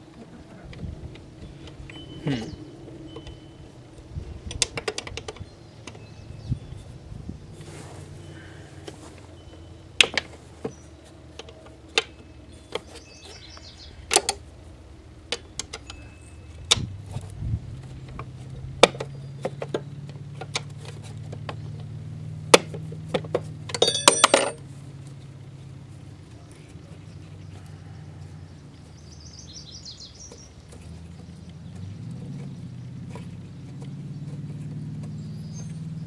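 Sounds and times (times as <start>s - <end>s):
wrenches clinking together: 23.8s - 24.6s.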